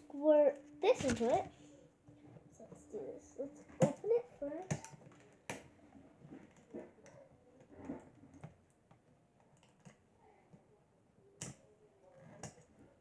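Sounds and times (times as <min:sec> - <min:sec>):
fingers handling plastic packet: 0:00.9 - 0:01.6.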